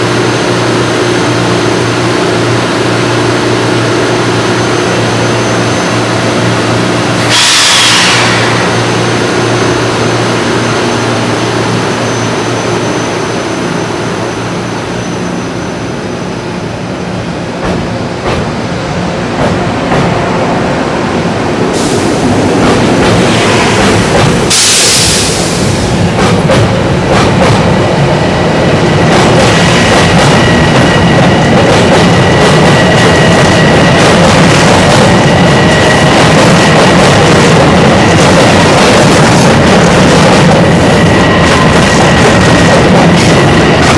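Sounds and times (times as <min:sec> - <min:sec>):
loud hisses: 0:07.3 - 0:09.0, 0:21.4 - 0:26.2
train wheels clicking over rails: 0:17.5 - 0:20.7, 0:21.3 - 0:43.9.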